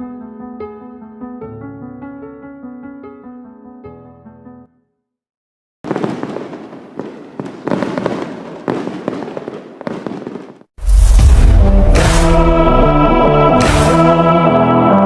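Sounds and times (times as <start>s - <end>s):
loud crackling bangs: 5.9s - 14.3s
loud music with guitar: 11.7s - 15.0s.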